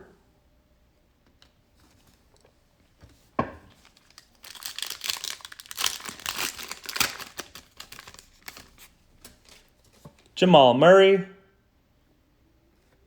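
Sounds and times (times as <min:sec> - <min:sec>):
plastic wrapper tearing and crinkling: 0:03.7 - 0:09.7.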